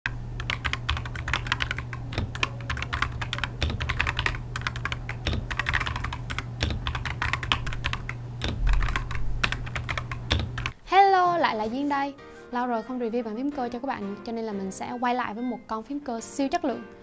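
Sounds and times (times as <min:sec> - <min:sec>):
steady low hum: 0:00.1 - 0:12.0
mechanical keyboard typing: 0:00.4 - 0:10.8.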